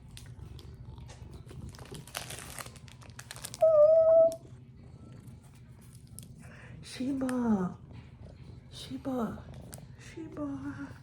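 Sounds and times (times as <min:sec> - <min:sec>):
plastic packaging crinkling: 0:01.5 - 0:04.4.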